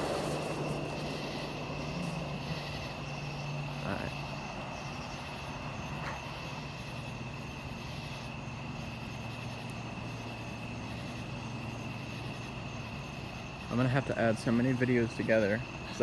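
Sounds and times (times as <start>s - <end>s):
low drone: 0.0s - 5.1s
crickets chirping: 0.0s - 16.0s.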